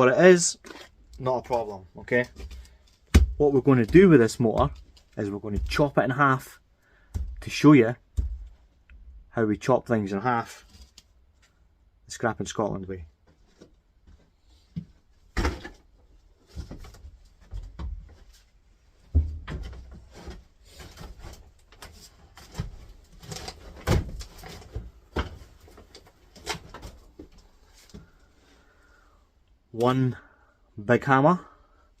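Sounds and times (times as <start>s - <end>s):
objects knocking and clunking: 0.6s - 6.2s, 7.0s - 9.2s, 13.2s - 28.3s.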